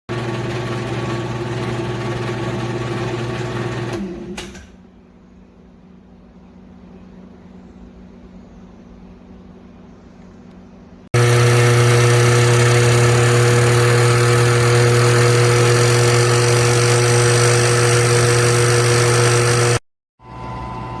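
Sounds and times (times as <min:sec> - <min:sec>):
drill press motor humming: 0:00.1 - 0:04.5, 0:11.2 - 0:21.0.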